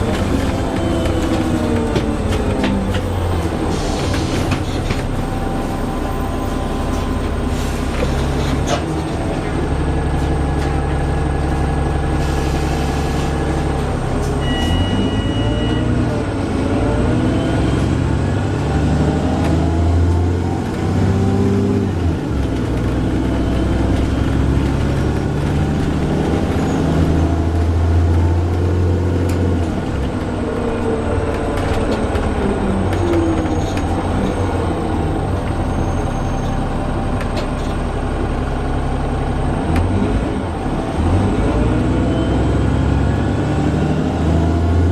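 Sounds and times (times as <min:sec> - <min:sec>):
bus engine droning: 0:00.0 - 0:44.9
two-tone beep: 0:14.4 - 0:16.0.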